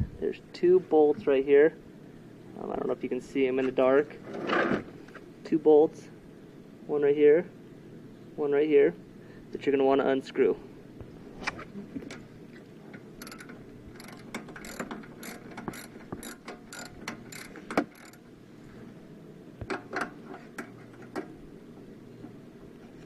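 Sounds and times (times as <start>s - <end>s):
socket ratchet clicking: 13.2s - 18.2s.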